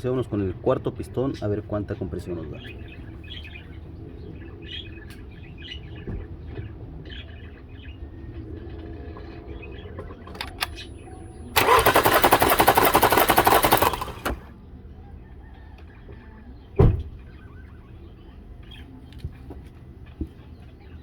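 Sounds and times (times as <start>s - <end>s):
engine cranking on starter: 10.2s - 14.5s.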